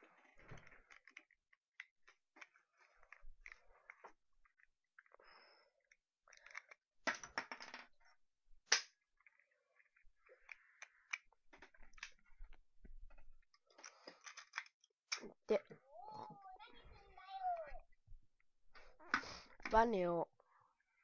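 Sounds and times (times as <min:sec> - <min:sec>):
small parts clicking: 0:00.1 - 0:05.1, 0:05.8 - 0:07.6, 0:08.7 - 0:15.3
parts clattering: 0:06.3 - 0:15.2.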